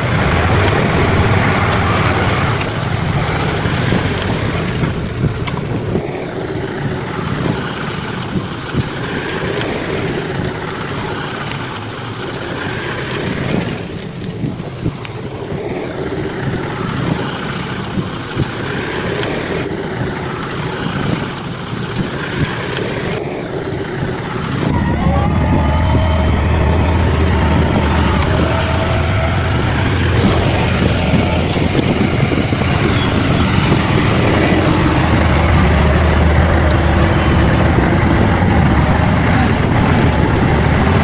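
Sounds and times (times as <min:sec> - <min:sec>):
bulldozer diesel engine running: 0:00.0 - 0:41.0
engine knocks: 0:00.0 - 0:41.0
steady whine: 0:23.1 - 0:41.0.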